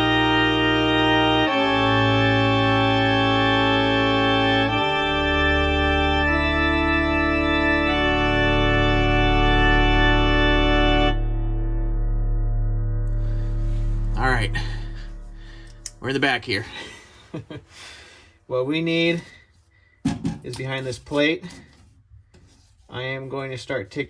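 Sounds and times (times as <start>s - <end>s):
sustained organ-like chords: 0.0s - 17.8s.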